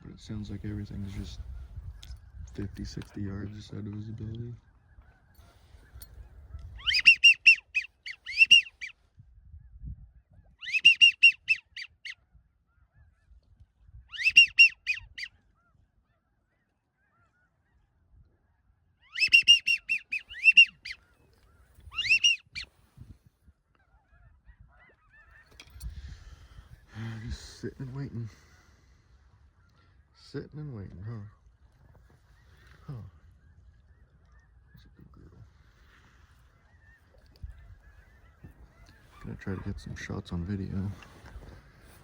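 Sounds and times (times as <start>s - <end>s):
goose call yelping: 6.8s - 8.9s, 10.6s - 12.2s, 14.1s - 15.3s, 19.1s - 21.0s, 21.9s - 22.6s.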